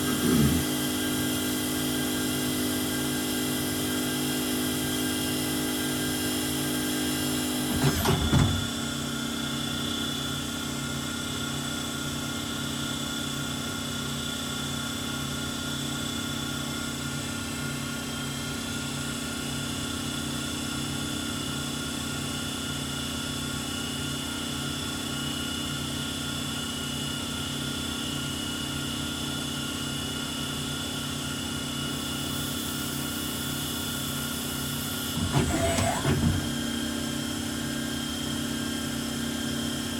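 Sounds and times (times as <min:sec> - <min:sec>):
noisy machine burst: 0:35.2 - 0:36.9.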